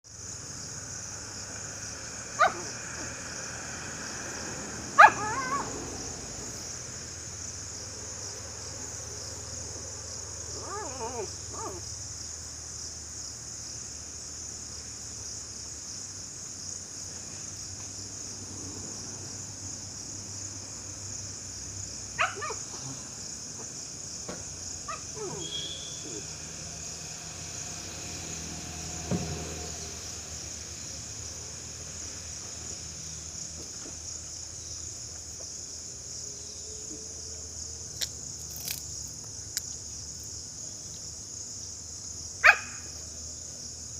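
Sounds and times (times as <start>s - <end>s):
dog barking: 2.4s - 3.1s, 5.0s - 5.8s, 10.6s - 11.8s, 22.2s - 23.0s, 24.9s - 26.3s, 42.4s - 42.9s
dog yelping: 2.4s - 3.1s, 5.0s - 5.8s, 10.6s - 11.8s, 22.2s - 22.8s, 24.9s - 26.3s, 42.4s - 42.9s.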